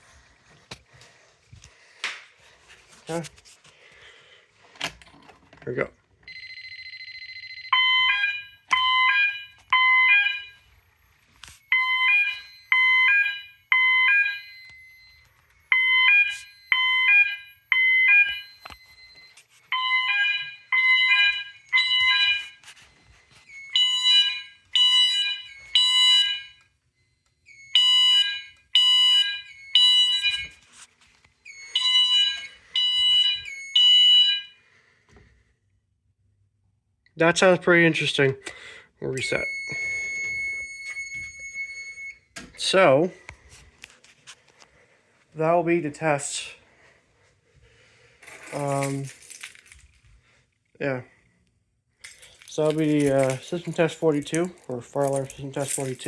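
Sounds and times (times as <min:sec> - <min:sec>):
fire alarm horn beeps: 0:06.3 - 0:34.7, 0:39.2 - 0:42.3
steady alarm tone: 0:06.3 - 0:35.0, 0:39.2 - 0:42.8.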